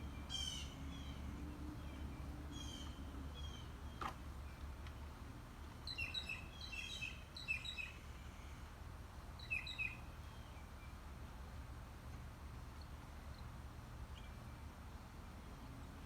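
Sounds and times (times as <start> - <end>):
birds chirping: 0.0 - 5.2, 5.8 - 8.7, 9.4 - 11.0.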